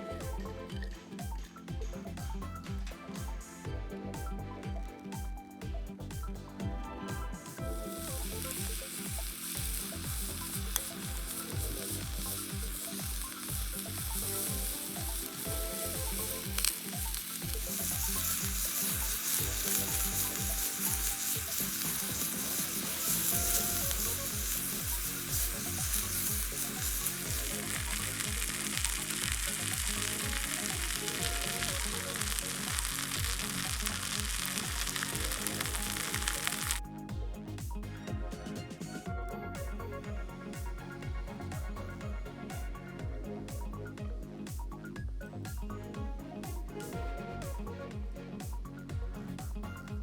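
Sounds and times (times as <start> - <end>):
background music with steady beat: 0.0 - 50.0
food sizzling in a pan: 7.5 - 36.8.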